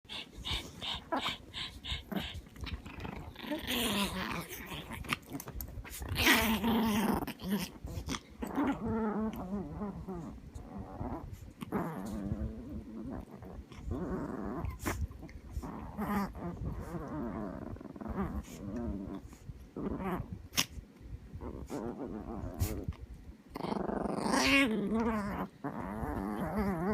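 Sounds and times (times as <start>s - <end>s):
small dogs play-growling: 0.1s - 26.9s.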